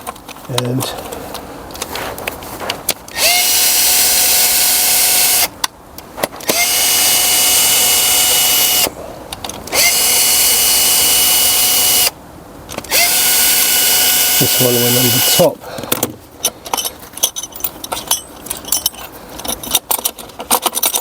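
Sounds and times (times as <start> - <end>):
cordless power tool whining: 3.1 - 5.5, 6.4 - 8.9, 9.7 - 12.2, 12.9 - 15.5.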